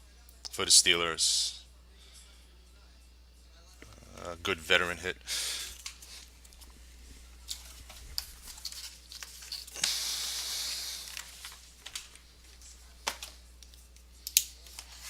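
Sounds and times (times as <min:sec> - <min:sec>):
packaging rustling: 0:10.7 - 0:13.3.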